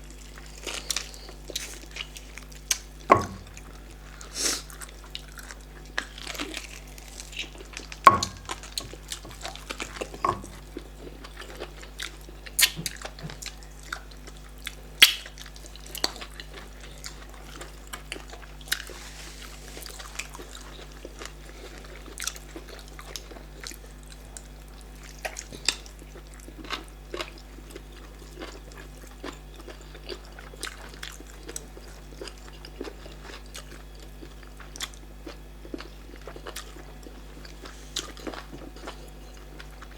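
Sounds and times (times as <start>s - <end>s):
steady low hum: 0.0s - 26.4s
chewing and mouth smacks: 0.1s - 19.0s, 19.7s - 39.9s.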